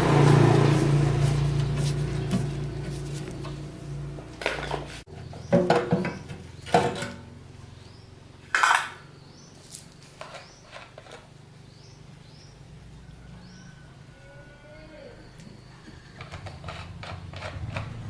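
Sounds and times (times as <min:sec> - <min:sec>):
birds chirping: 0:07.6 - 0:16.3.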